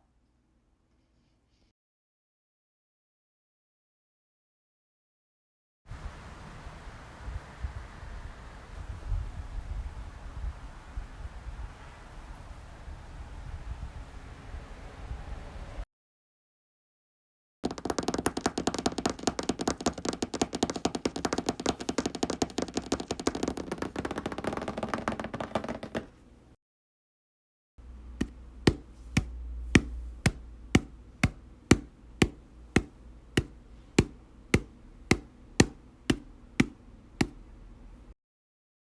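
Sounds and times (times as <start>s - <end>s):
rapid clattering taps: 17.6s - 26.1s
sharp knocks: 17.6s - 26.1s, 28.2s - 37.4s.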